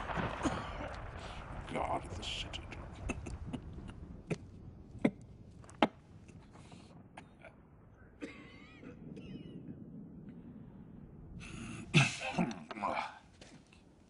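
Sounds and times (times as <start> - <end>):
person clearing throat: 8.2 - 9.5.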